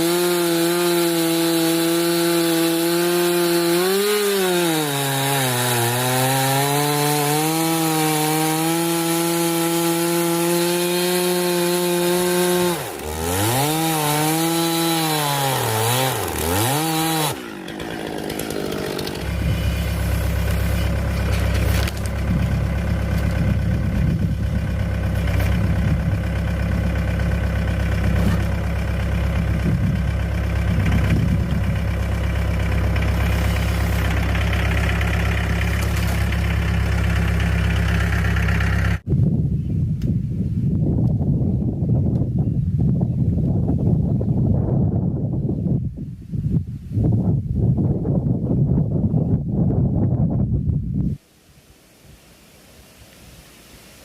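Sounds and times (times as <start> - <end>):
chainsaw cutting and revving: 0.0 - 39.0
deep engine idling: 18.7 - 39.0.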